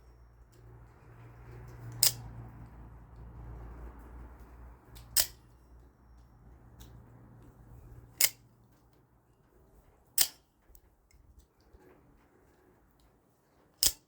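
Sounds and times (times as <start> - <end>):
knife blade snapping: 5.2 - 5.4, 10.2 - 10.4.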